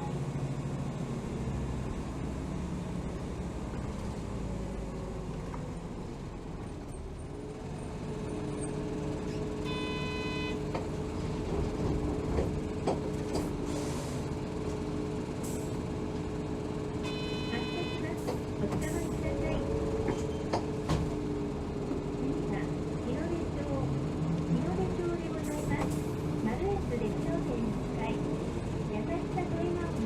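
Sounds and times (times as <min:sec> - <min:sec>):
bus diesel engine running: 0:00.0 - 0:30.0
short electronic tone: 0:09.7 - 0:10.6, 0:17.1 - 0:18.0.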